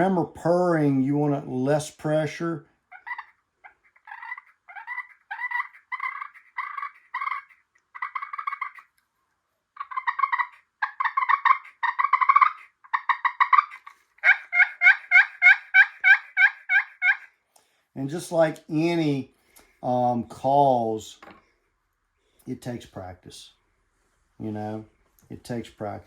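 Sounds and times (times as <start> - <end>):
turkey call purrs: 2.9 - 8.9, 9.8 - 17.3.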